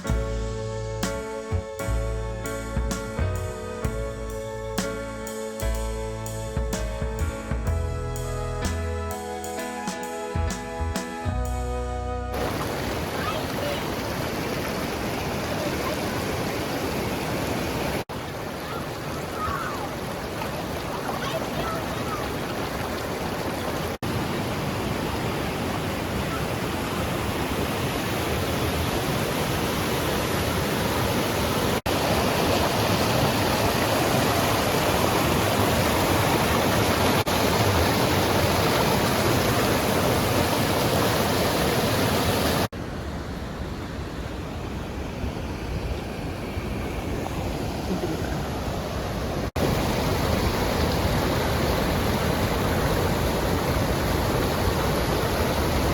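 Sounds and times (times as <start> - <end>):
waterfall and river rushing: 12.3 - 55.9.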